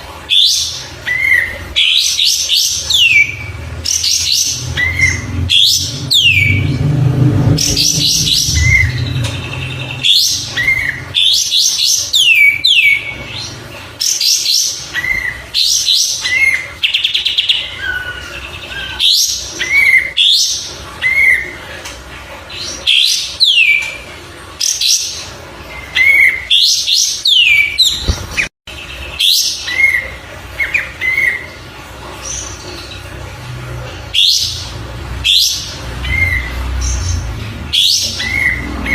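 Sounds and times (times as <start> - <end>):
bulbul singing: 0.3 - 21.5.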